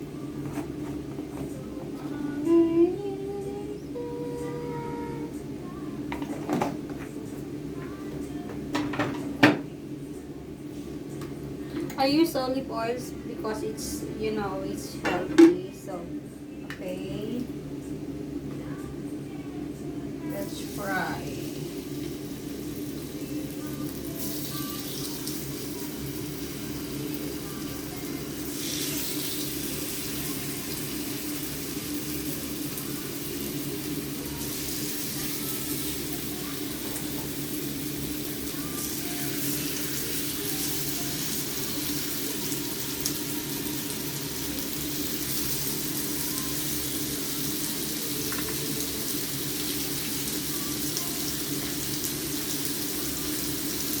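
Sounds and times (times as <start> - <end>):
steady low hum: 0.0 - 53.8
chicken sizzling in frying pan: 20.3 - 54.0.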